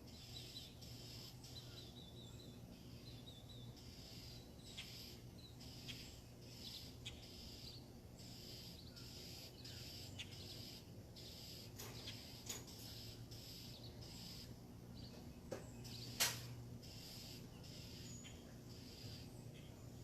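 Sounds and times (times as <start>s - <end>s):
high chirping calls: 0.0s - 20.0s
sharp clicks: 15.5s - 16.6s.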